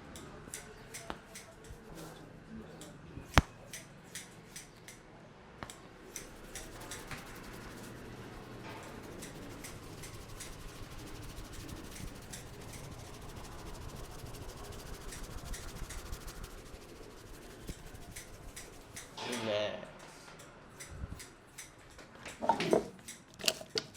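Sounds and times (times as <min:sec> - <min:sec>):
quick sharp clicks and snaps: 0:00.1 - 0:02.1, 0:23.0 - 0:23.9
hands rubbing hair: 0:06.0 - 0:19.2.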